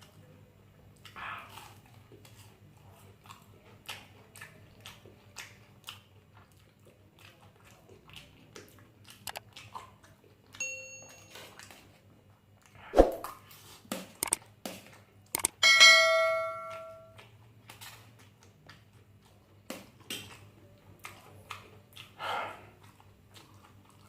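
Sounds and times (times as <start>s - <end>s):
chewing and biting food: 0.8s - 10.6s, 11.3s - 15.5s, 17.1s - 24.0s
wet mouth clicks and smacks: 8.6s - 10.2s, 13.0s - 15.5s
short ringing chime: 10.6s - 11.4s, 15.6s - 17.1s.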